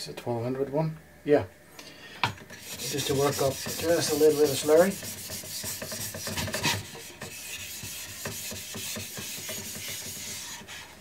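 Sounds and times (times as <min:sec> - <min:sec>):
plate scraping on wet whetstone: 0:02.5 - 0:11.0.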